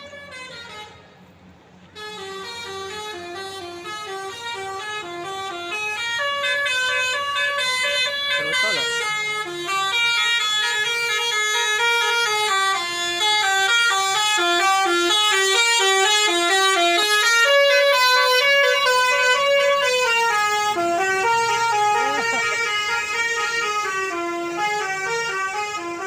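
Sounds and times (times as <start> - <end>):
multi-tone bus air horn melody: 0.0 - 26.0.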